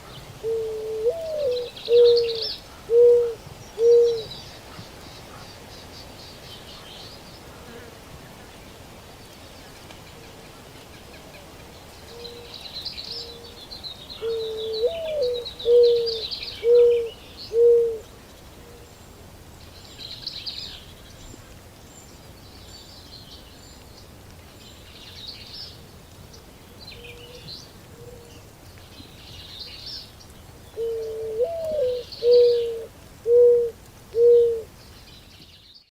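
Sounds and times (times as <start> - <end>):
dove cooing: 0.4 - 4.4, 14.2 - 18.1, 30.8 - 34.7.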